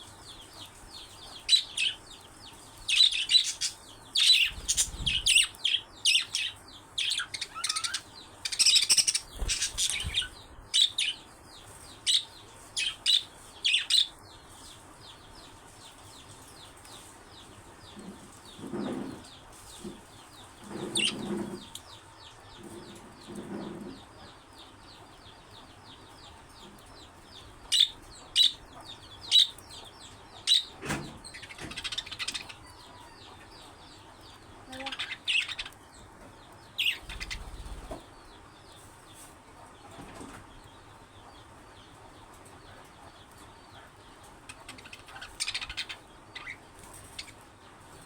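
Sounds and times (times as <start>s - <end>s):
budgerigars chirping: 0.6s - 2.0s, 2.8s - 11.2s, 27.6s - 33.5s, 34.7s - 35.8s, 36.8s - 38.0s, 43.7s - 47.4s.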